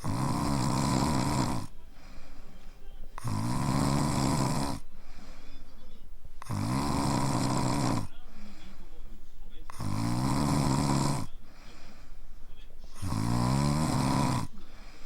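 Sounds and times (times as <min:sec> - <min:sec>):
dog snoring: 0:00.0 - 0:02.2, 0:03.2 - 0:05.2, 0:06.4 - 0:08.6, 0:09.7 - 0:12.0, 0:12.9 - 0:15.0.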